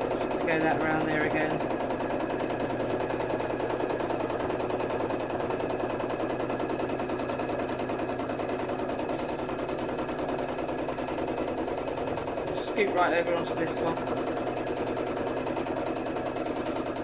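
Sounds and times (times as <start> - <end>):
sewing machine stitching fast: 0.0 - 17.0.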